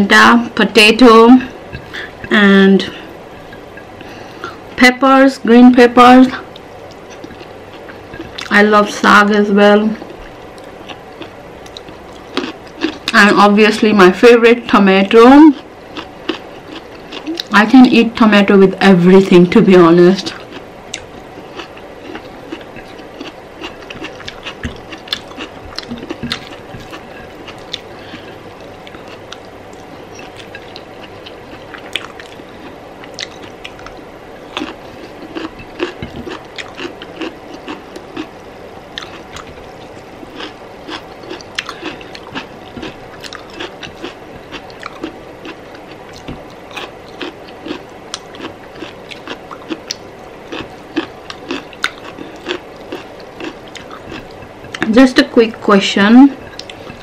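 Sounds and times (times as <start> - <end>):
faint steady hum: 0.0 - 57.0
chewing with wet mouth clicks: 10.6 - 13.2, 20.3 - 32.4, 33.0 - 38.3, 38.9 - 54.9, 56.4 - 57.0.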